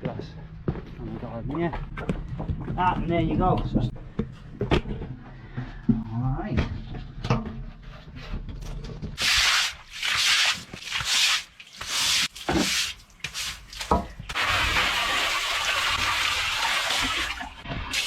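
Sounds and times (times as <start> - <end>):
water hissing through drain: 9.2 - 18.0.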